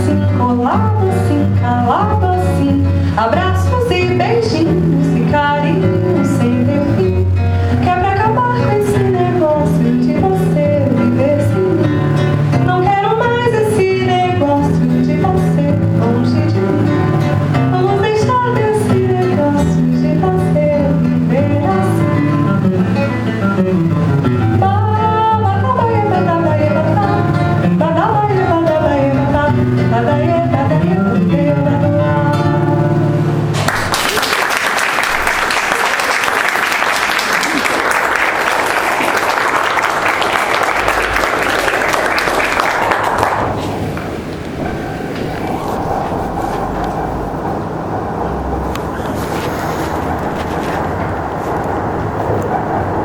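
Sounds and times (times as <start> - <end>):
woman singing: 0.0 - 22.7, 24.5 - 33.0
nylon-string guitar plucking: 0.0 - 33.7.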